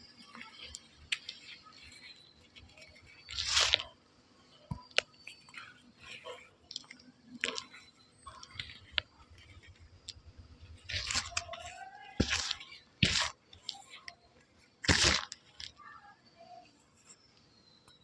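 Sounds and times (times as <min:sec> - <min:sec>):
person chewing chalk: 0:00.1 - 0:04.0, 0:04.6 - 0:14.2, 0:14.8 - 0:15.8.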